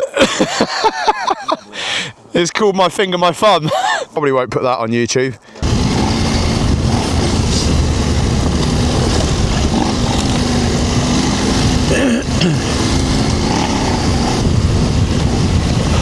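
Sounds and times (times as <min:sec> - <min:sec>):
motorcycle engine running: 0:05.6 - 0:16.0.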